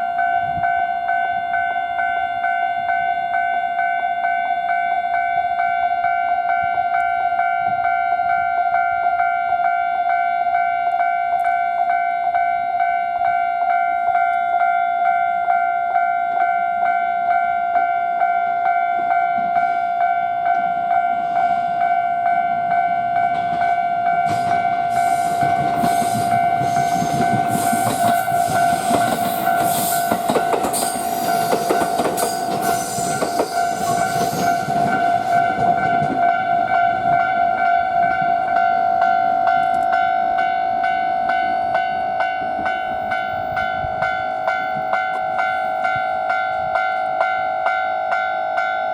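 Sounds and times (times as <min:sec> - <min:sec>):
train wheels clattering on rails: 0:20.5 - 0:38.4.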